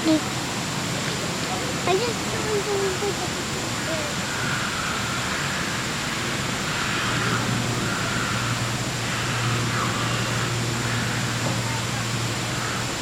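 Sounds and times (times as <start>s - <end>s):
steady rushing noise: 0.0s - 13.0s
low hum: 3.2s - 13.0s.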